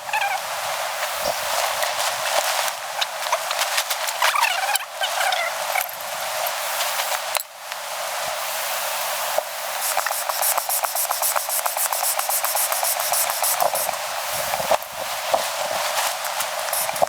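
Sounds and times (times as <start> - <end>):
small clicks and rustles: 1.2 - 7.2
steady hiss: 5.6 - 17.0.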